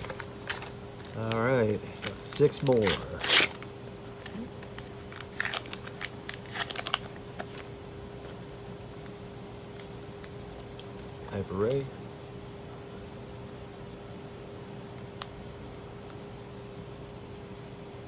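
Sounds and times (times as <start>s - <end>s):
wrapper tearing and crinkling: 0.0s - 3.6s, 4.2s - 7.7s
faint steady hum: 0.0s - 18.0s.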